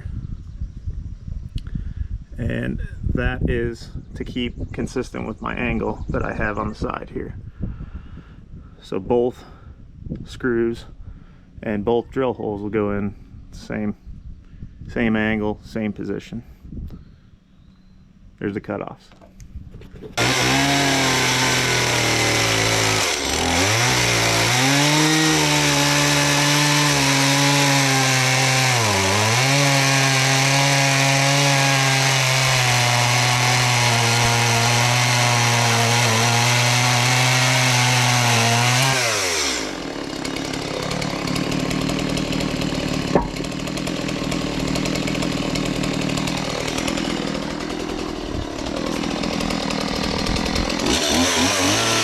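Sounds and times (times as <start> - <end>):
power tool motor running: 20.1 - 52.0.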